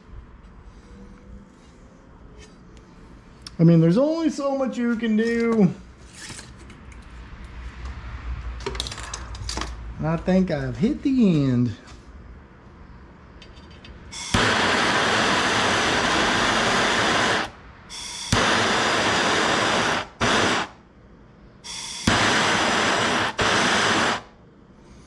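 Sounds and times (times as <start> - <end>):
hissing jet of gas: 14.1 - 20.8, 21.6 - 24.3.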